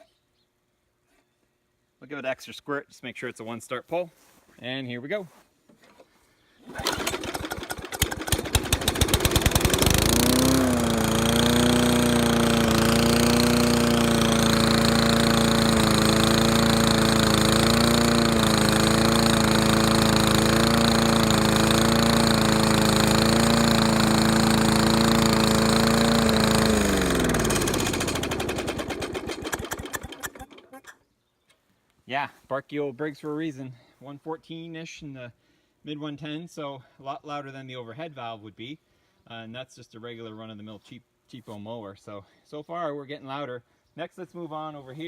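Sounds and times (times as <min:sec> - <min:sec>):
push-mower engine running: 0:06.6 - 0:30.9.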